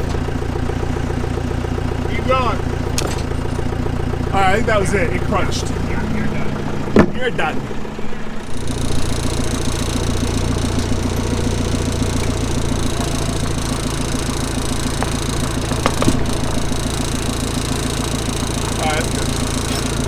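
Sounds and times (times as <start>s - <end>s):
diesel engine fast idle: 0.0s - 20.0s
short knocks: 2.6s - 3.9s, 6.7s - 7.4s, 14.1s - 17.4s.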